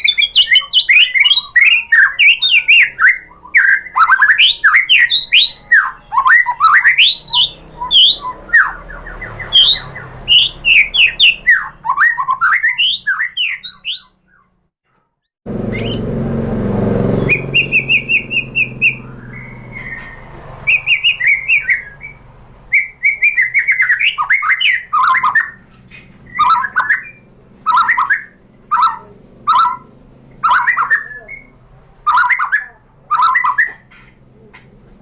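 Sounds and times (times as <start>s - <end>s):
bird singing: 0.0s - 14.6s, 15.6s - 34.8s
low rumbling noise: 15.5s - 23.0s.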